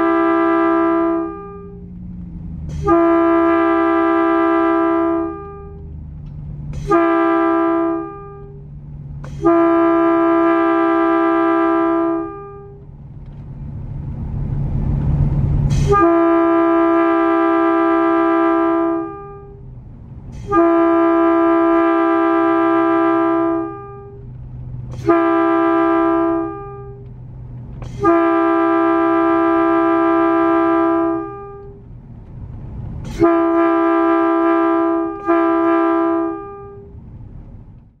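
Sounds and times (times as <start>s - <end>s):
locomotive air horn blasts: 0.0s - 1.9s, 2.7s - 6.0s, 6.7s - 12.9s, 15.7s - 19.7s, 20.3s - 27.1s, 27.8s - 31.9s, 33.0s - 37.0s.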